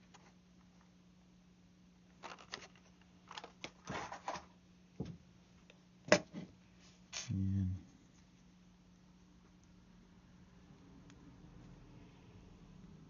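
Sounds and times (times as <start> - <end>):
faint electrical hum: 0.0 - 13.0
rattle and rustle: 2.2 - 4.5.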